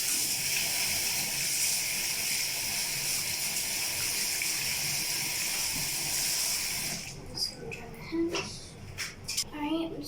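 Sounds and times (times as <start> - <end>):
hands being washed: 0.0 - 7.2
tap water running into sink: 0.0 - 7.2.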